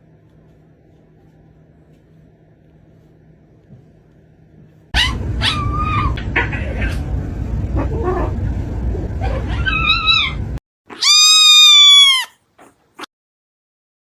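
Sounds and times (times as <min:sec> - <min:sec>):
cat meowing: 0:09.5 - 0:12.8.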